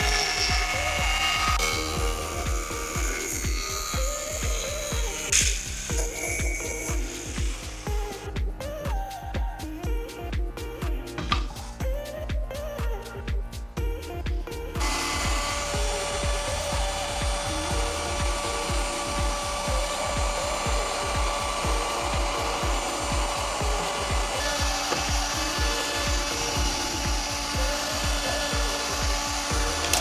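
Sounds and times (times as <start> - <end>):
power tool grinding: 0.0 - 8.7, 13.0 - 30.0
background music with beat: 0.0 - 30.0.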